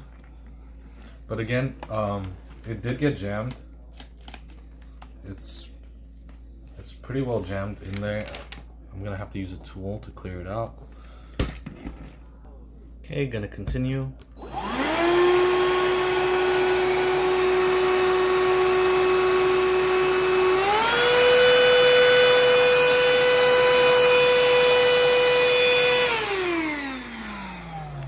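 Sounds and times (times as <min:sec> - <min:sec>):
handheld vacuum motor whine: 0:14.4 - 0:28.0
vacuum sucking up cereal: 0:14.4 - 0:28.0.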